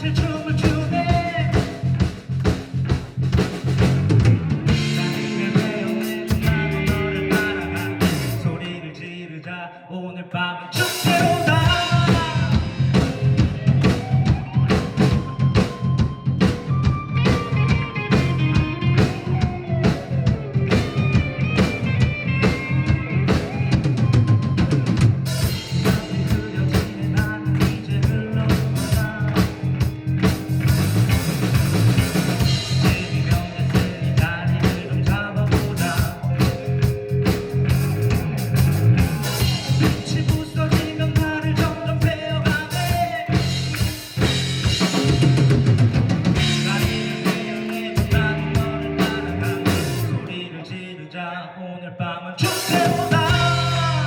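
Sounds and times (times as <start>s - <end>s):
rock band instrumental: 0.0s - 9.0s, 10.7s - 50.5s, 52.4s - 54.0s.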